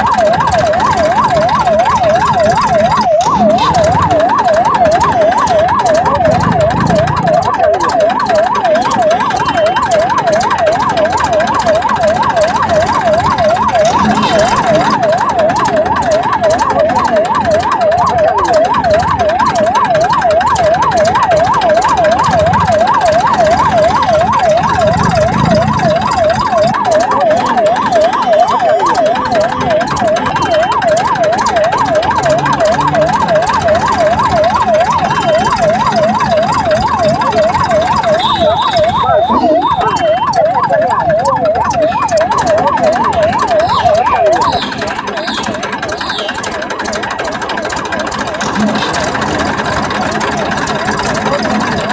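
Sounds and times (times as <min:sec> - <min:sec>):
electronic siren yelping: 0:00.0 - 0:51.9.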